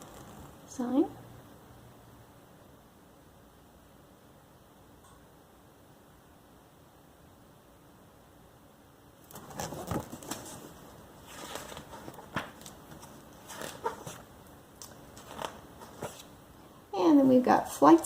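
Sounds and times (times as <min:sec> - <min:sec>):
magazine pages turning: 0:09.3 - 0:16.3.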